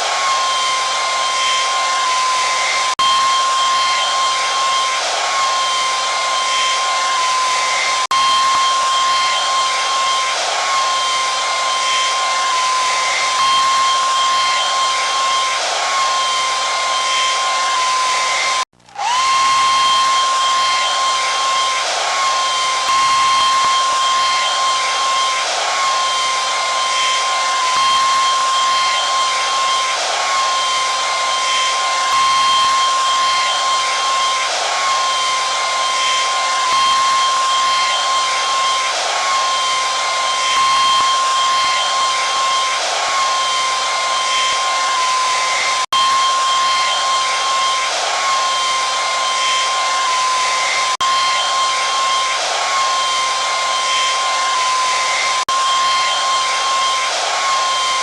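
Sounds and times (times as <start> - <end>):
hair dryer running: 0.0 - 58.0.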